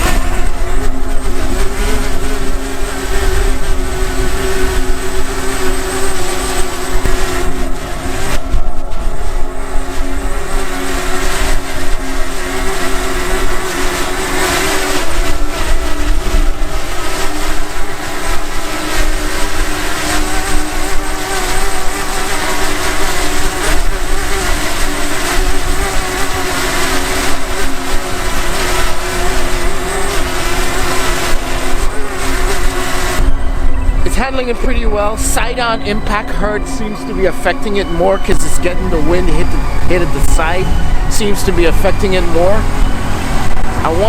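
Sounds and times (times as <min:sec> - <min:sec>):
drone propellers whining: 0:00.0 - 0:44.0
wind buffeting microphone: 0:00.0 - 0:44.0.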